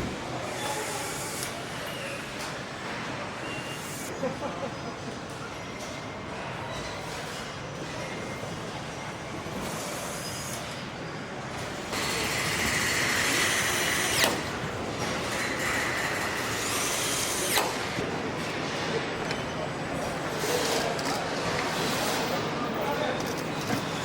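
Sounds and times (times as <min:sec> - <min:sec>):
factory hall noise: 0:00.0 - 0:24.0
power wrench hissing whine: 0:00.4 - 0:02.3, 0:03.4 - 0:04.1.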